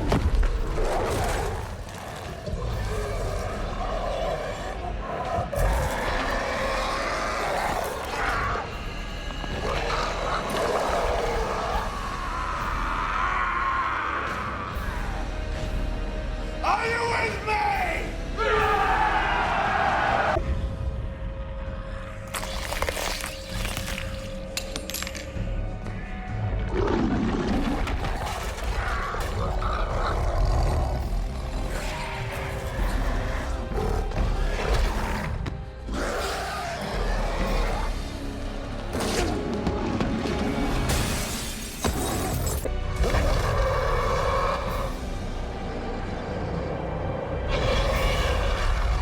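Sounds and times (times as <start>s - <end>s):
creatures roaring and howling: 0.0s - 15.6s, 18.4s - 20.4s, 26.6s - 38.8s, 42.2s - 49.0s
music: 0.0s - 49.0s
low beastly growl: 26.6s - 38.2s.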